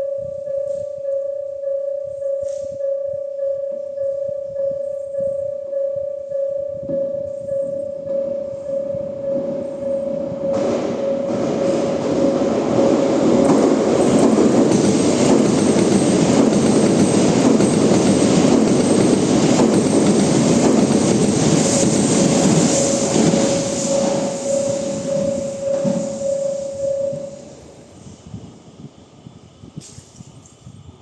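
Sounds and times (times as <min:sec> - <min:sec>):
level-crossing alarm tone: 0:00.0 - 0:28.1
train wheels clacking over rail joints: 0:10.5 - 0:27.3.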